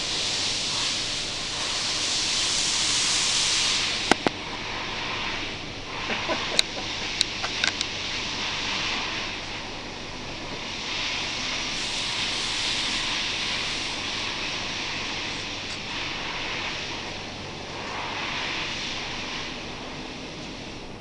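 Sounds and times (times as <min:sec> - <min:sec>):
sanding hiss: 0:00.0 - 0:21.0.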